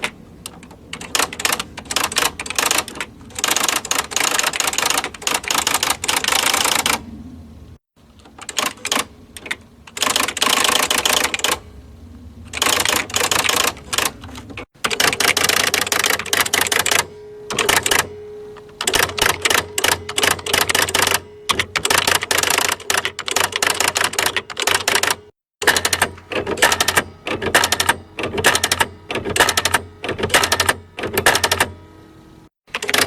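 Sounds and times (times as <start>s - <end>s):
electric typewriter typing: 0.0s - 7.0s, 8.2s - 11.6s, 12.5s - 31.8s, 32.7s - 33.0s
steady hum: 0.0s - 25.3s.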